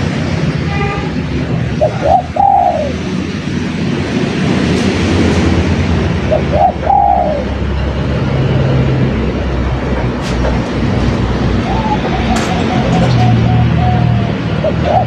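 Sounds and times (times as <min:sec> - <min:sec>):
dove cooing: 0:01.7 - 0:03.5, 0:06.2 - 0:07.7, 0:09.8 - 0:15.0.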